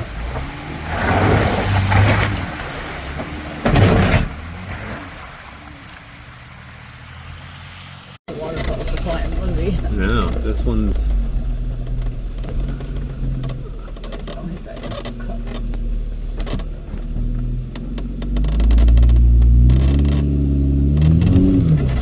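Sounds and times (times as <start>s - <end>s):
off-road vehicle engine revving: 0.0s - 22.0s.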